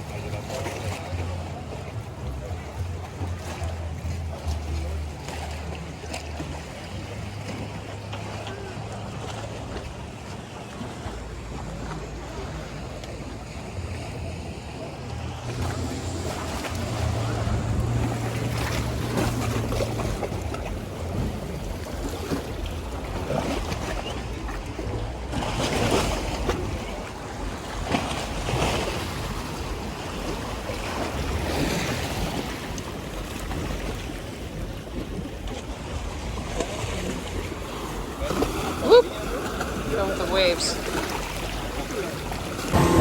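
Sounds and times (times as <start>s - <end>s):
ocean waves washing onto shore: 0.0s - 43.0s
wind buffeting microphone: 14.8s - 28.6s.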